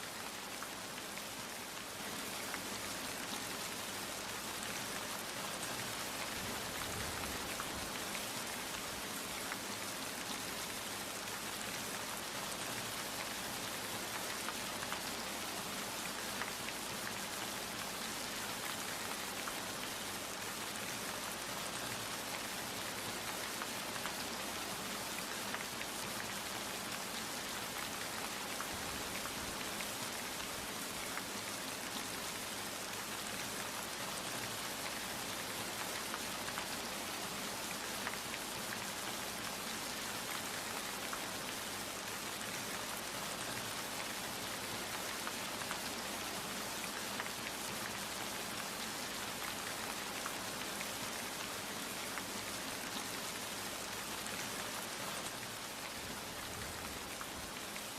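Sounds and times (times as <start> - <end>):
steady rain falling: 0.0 - 57.9.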